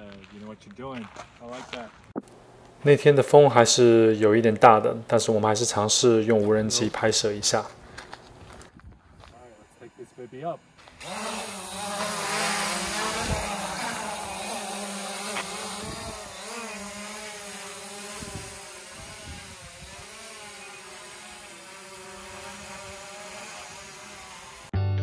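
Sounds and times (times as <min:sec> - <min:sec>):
drone propellers whining: 0:09.4 - 0:24.7.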